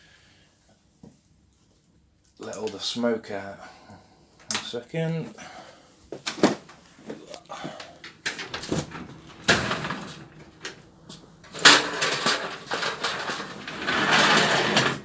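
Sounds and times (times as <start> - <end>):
garage door rushing rattle: 8.1 - 15.0
garage door knocks and clatters: 8.2 - 10.8, 11.5 - 15.0.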